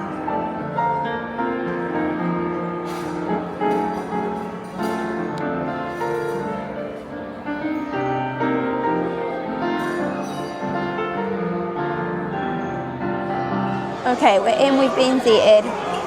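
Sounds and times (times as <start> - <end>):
gentle piano music: 0.0 - 16.0.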